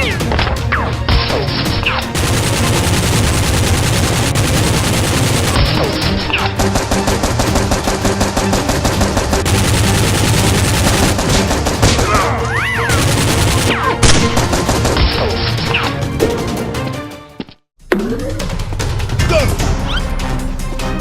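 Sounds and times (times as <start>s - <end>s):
background music: 0.0s - 21.0s
rapid automatic gunfire: 2.2s - 12.3s, 12.9s - 15.2s.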